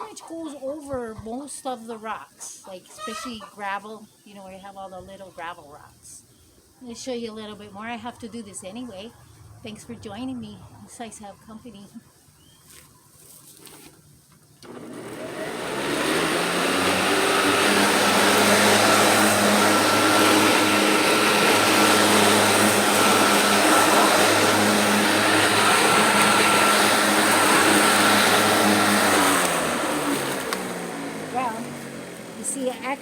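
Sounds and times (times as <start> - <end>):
electric lawnmower whining: 14.6 - 33.0.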